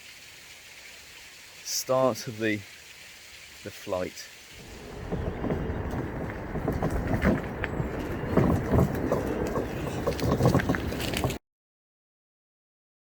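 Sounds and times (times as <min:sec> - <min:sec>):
knocks and scrapes: 0:04.6 - 0:11.4
wind on microphone: 0:04.6 - 0:11.4.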